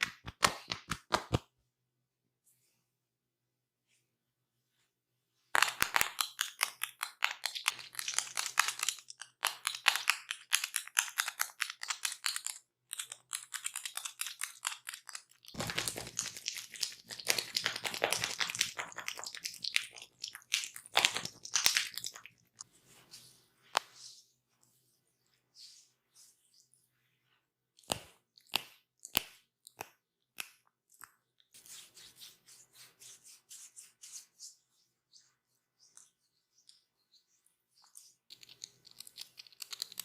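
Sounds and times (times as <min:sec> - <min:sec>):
hands rubbing skin and hair: 0:05.6 - 0:26.6, 0:27.9 - 0:36.8.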